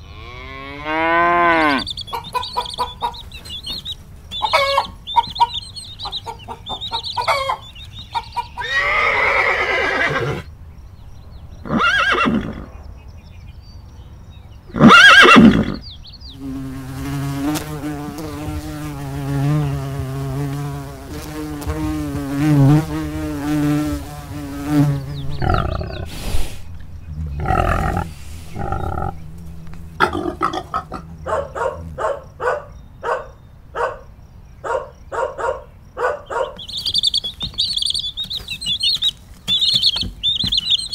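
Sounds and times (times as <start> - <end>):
farm animal calls: 0.0 - 10.5, 14.7 - 34.0, 34.6 - 40.9
rapid chirps: 1.5 - 10.4, 36.2 - 40.9
long wavering buzz: 26.8 - 30.0.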